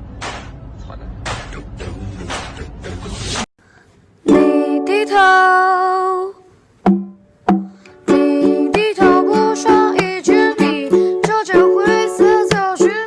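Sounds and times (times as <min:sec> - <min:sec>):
person singing: 0:00.9 - 0:03.4, 0:04.3 - 0:06.5, 0:07.9 - 0:13.0
plucked string instrument: 0:04.2 - 0:05.4, 0:06.8 - 0:13.0.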